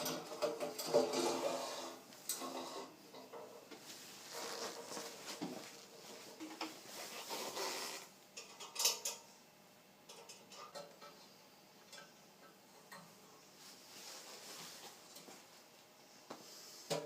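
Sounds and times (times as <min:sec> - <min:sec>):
metal tools clattering: 0:00.0 - 0:01.6.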